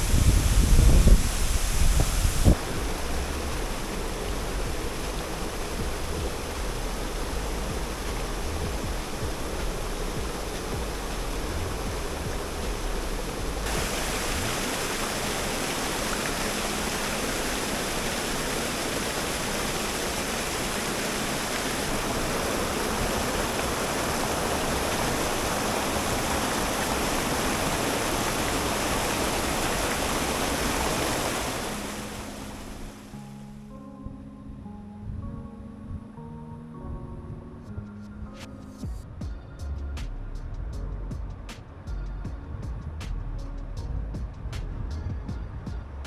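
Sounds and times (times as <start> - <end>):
waterfall rushing: 0.0 - 33.3.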